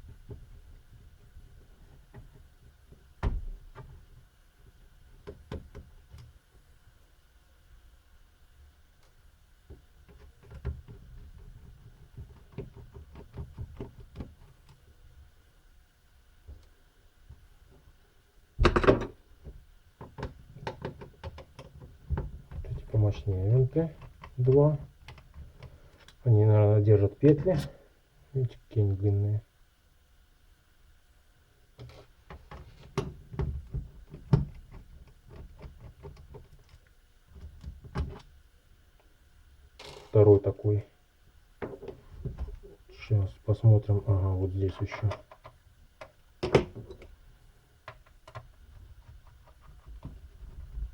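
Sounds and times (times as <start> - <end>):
small clicks and knocks: 18.6 - 22.8, 44.8 - 47.2, 47.8 - 50.9
screwdriver clicks and taps on plastic: 47.8 - 48.5.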